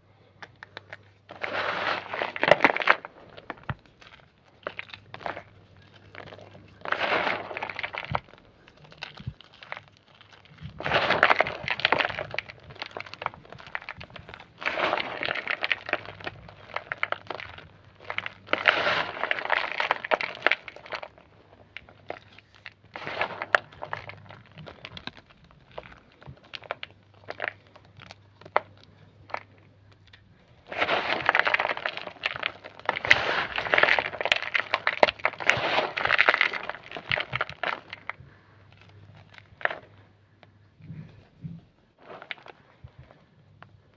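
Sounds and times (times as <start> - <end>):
chalk cracking: 0.4 - 24.9, 30.6 - 38.2
chalk crunching: 0.4 - 29.6, 30.4 - 40.0.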